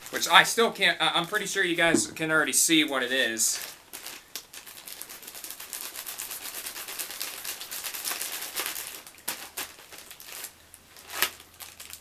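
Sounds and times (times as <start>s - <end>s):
packaging crinkling: 3.6s - 12.0s.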